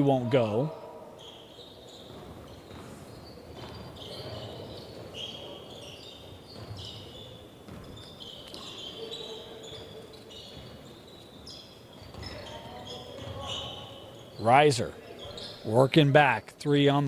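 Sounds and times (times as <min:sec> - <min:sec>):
low gym background noise: 0:00.0 - 0:17.0
sneakers squeaking on hardwood: 0:00.7 - 0:15.8
basketball bouncing: 0:01.9 - 0:08.9.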